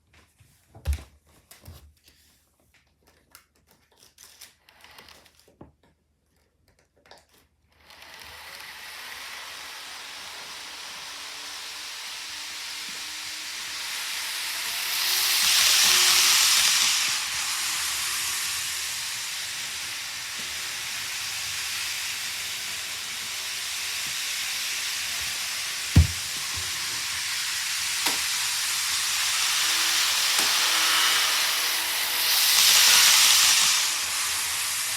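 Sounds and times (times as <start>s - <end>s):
model train whirring on track: 7.8s - 34.9s.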